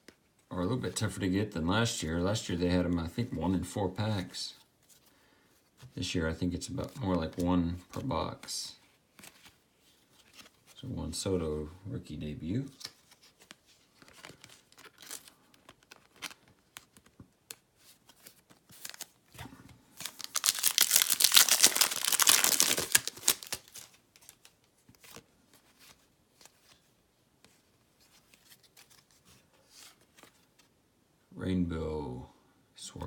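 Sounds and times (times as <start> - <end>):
cards being handled clicks: 12.8 - 19.1
foil wrapper tearing and crinkling: 20.0 - 24.4.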